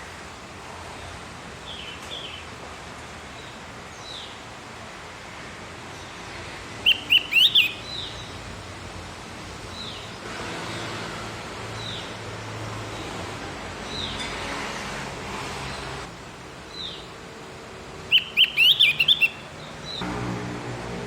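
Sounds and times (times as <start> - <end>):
bird whistle call: 6.8 - 7.9, 18.1 - 19.4
quick rising bird chirps: 6.8 - 8.2, 18.1 - 20.0.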